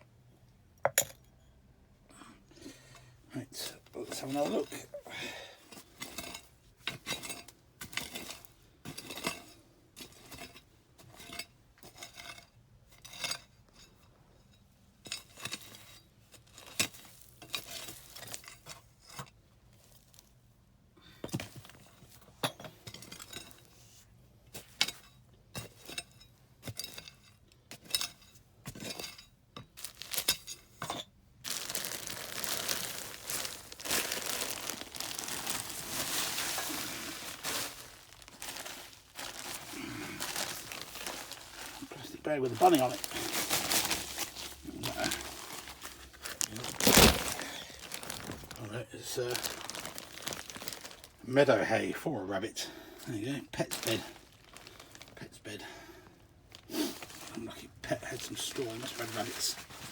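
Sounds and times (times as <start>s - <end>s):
hand tool scraping rubble: 5.8s - 13.8s
plastic bag crinkling: 29.8s - 30.4s, 31.4s - 51.3s, 53.6s - 55.3s, 56.5s - 57.4s, 58.2s - 59.9s.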